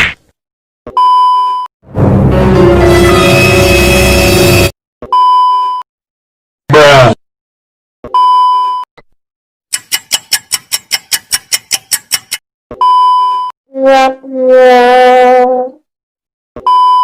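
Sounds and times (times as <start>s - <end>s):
censor beep: 1.0s - 1.7s, 5.1s - 5.8s, 8.2s - 8.9s, 12.8s - 13.5s, 16.6s - 17.0s
brassy horn blast: 1.9s - 4.7s
rapid pitched taps: 9.7s - 12.4s.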